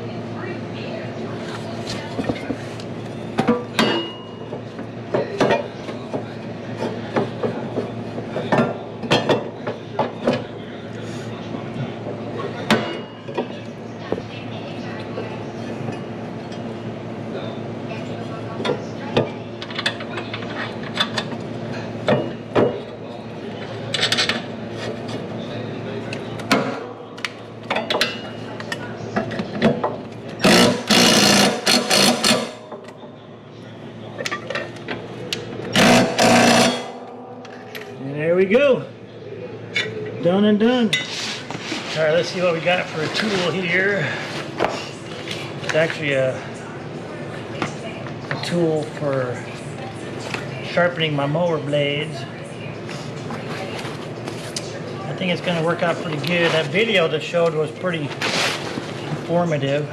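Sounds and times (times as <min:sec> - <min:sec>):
power wrench hammering: 0:30.4 - 0:32.8, 0:35.7 - 0:37.8.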